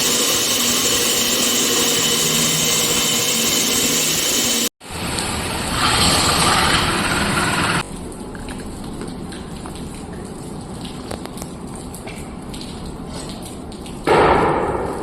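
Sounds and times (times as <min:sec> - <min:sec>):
core drilling machine hissing: 0:00.0 - 0:04.7, 0:05.7 - 0:07.8.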